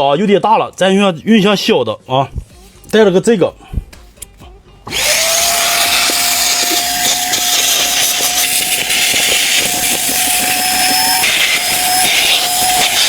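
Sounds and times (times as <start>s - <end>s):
vacuum cleaner running: 4.9s - 13.0s.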